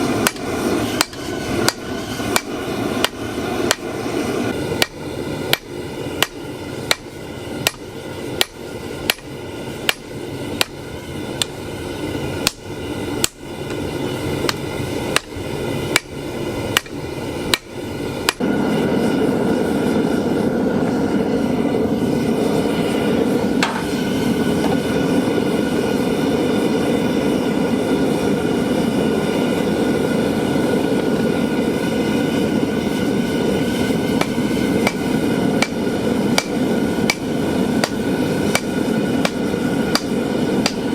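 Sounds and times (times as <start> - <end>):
loud steady rushing noise: 0.0 - 40.9
hammer striking steel on anvil: 0.1 - 4.0, 4.7 - 10.8, 12.4 - 13.8, 14.4 - 18.4, 23.6 - 24.9, 34.2 - 40.9.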